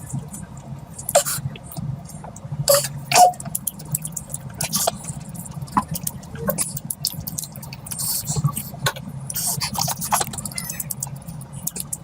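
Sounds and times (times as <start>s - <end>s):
person chewing: 0.1s - 12.0s.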